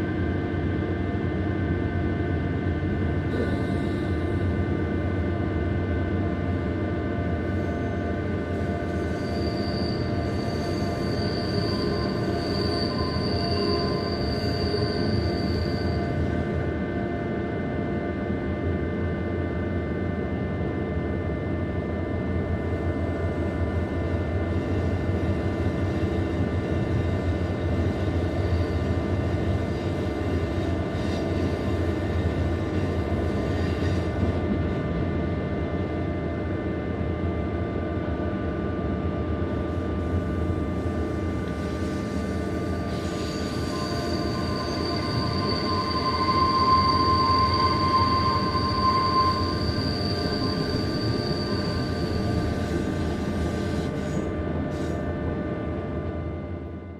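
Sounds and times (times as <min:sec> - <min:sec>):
train rumbling: 0:00.0 - 0:56.5
train wheels squealing: 0:03.3 - 0:04.7, 0:07.2 - 0:16.8, 0:22.6 - 0:34.6, 0:39.6 - 0:55.1.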